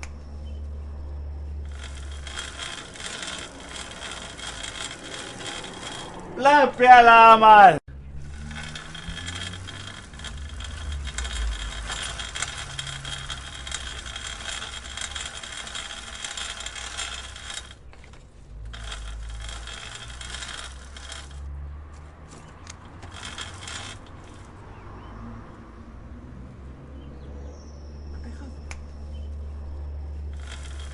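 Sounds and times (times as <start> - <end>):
bicycle chain clicking: 1.7 - 6.8, 8.0 - 21.5, 22.3 - 24.6, 30.3 - 30.9.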